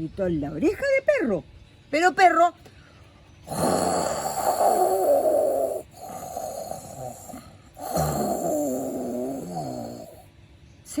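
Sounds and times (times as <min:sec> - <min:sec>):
loud snoring: 0:03.5 - 0:10.3.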